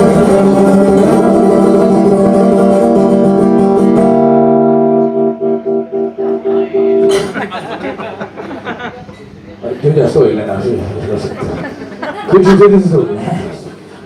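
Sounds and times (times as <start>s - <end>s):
guitar playing: 0.0s - 7.8s.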